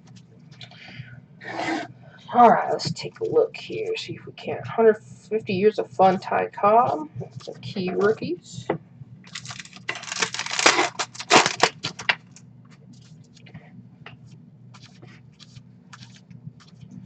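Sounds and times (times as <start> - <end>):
packaging rustling and crinkling: 9.3 - 12.4
cards flicking through a stack: 14.8 - 16.9.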